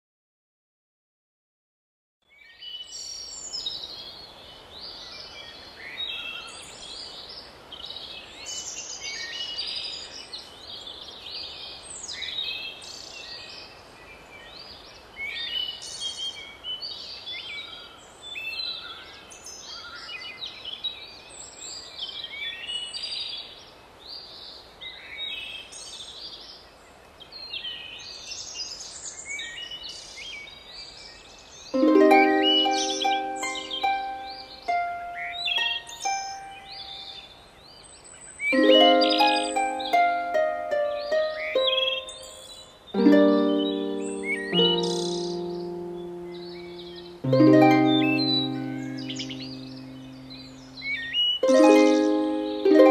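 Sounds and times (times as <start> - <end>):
steady background hiss: 2.3 - 52.9
birds chirping and singing: 31.8 - 52.9.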